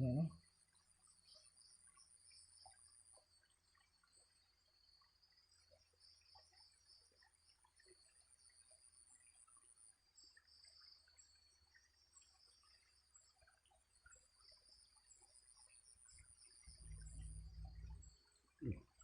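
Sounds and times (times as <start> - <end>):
crickets trilling: 14.4 - 18.2.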